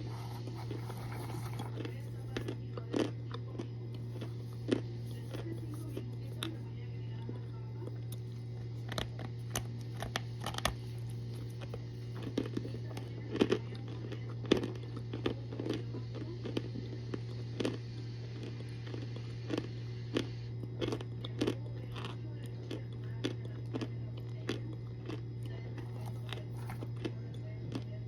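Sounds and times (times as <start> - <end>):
crunchy chewing: 0.0 - 28.0
steady low hum: 0.0 - 28.0.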